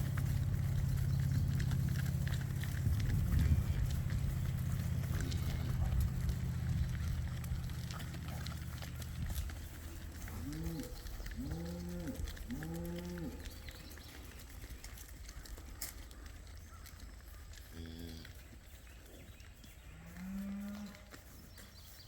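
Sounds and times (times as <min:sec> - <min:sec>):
cattle mooing: 0:00.0 - 0:14.0, 0:20.0 - 0:21.1
low rumble: 0:00.0 - 0:17.6.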